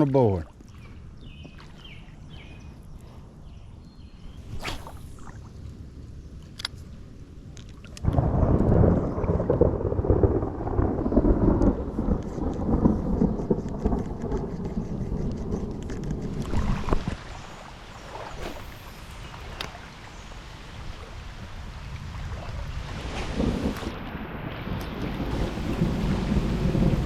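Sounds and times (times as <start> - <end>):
rain: 7.6 - 27.0
thunder rumbling: 8.0 - 17.3, 21.5 - 27.0.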